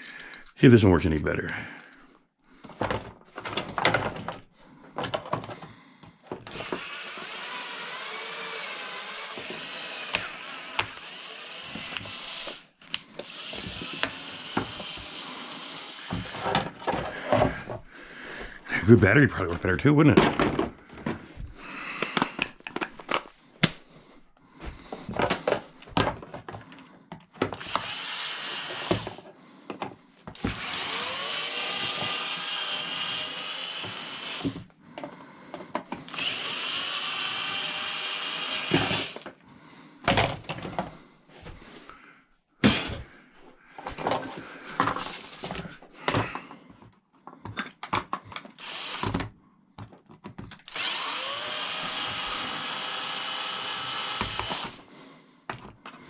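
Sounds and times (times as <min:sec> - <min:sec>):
cordless drill whining: 0:06.3 - 0:17.6, 0:27.4 - 0:29.3, 0:30.3 - 0:34.7, 0:35.8 - 0:39.3, 0:48.4 - 0:49.3, 0:50.6 - 0:54.9.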